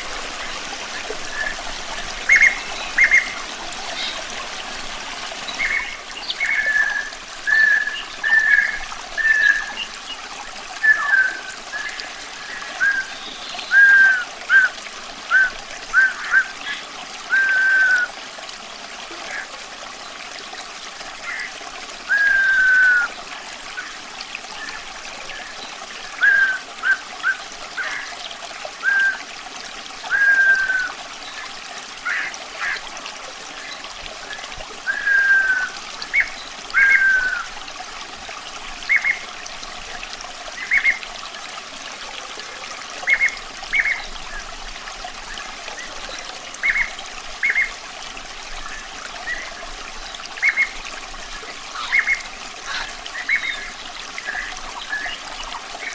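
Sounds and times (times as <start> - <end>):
trickling running water: 0.0 - 55.9
songbird whistling and chirping: 2.2 - 3.4, 5.5 - 9.8, 10.8 - 18.1, 22.1 - 23.1, 26.2 - 28.1, 28.8 - 29.2, 30.1 - 31.4, 34.3 - 37.5.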